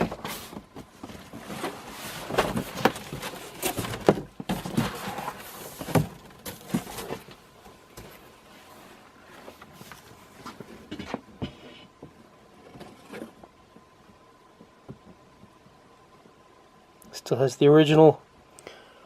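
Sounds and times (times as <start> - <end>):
cardboard box being handled: 0.0 - 11.0.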